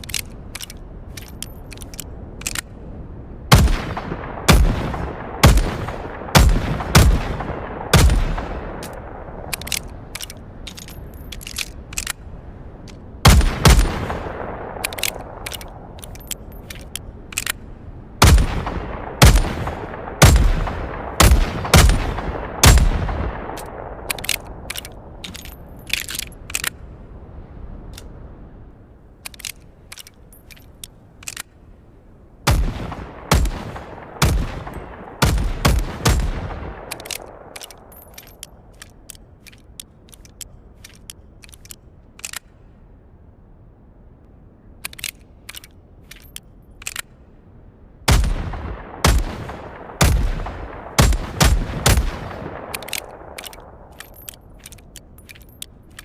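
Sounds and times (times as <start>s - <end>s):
revolver gunshots echoing: 3.5s - 9.3s, 18.2s - 24.6s, 32.5s - 37.9s, 48.1s - 53.9s
short metallic clicks: 14.8s - 17.6s, 36.8s - 42.6s, 52.6s - 56.0s.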